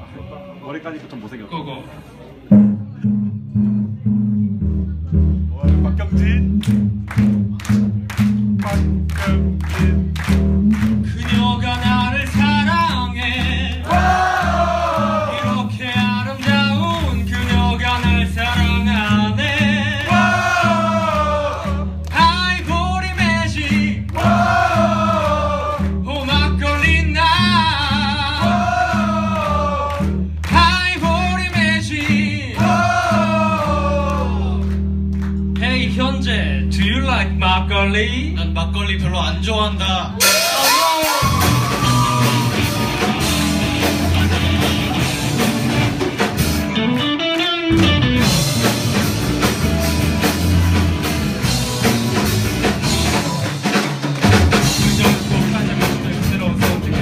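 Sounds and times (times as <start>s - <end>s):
guitar playing: 2.4s - 26.2s, 40.2s - 53.8s
bass guitar: 2.4s - 57.0s
drums: 2.4s - 57.0s.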